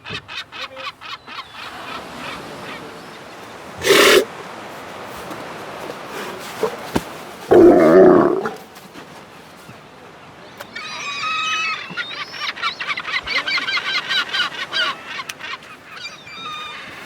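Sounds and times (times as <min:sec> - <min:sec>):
gulls calling: 0:00.1 - 0:05.0, 0:06.0 - 0:08.6.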